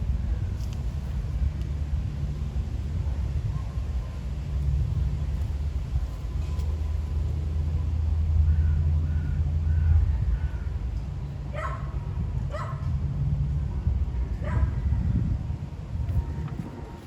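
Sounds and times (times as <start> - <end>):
wind rumble on microphone: 0.0 - 17.0
distant dog barking: 11.5 - 12.8, 14.4 - 14.8.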